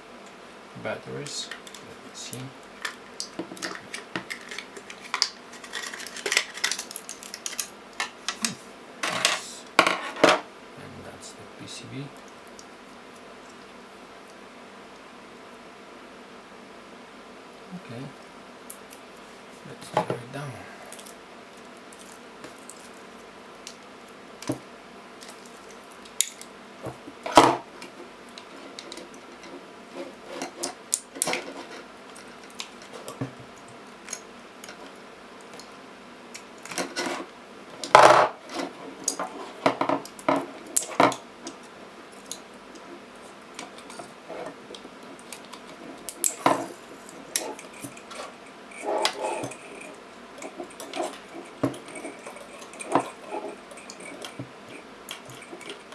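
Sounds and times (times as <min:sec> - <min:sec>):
plastic and metal parts clattering: 0:02.8 - 0:10.5, 0:28.6 - 0:31.8.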